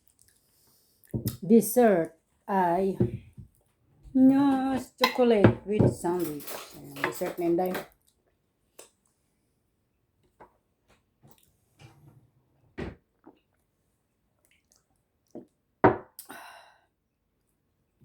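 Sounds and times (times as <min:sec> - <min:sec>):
dishes and utensils clicking: 0:05.0 - 0:07.9.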